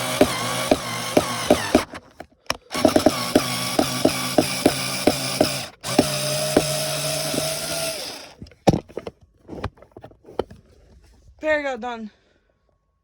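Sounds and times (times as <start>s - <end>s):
electric screwdriver running: 0.0s - 8.4s.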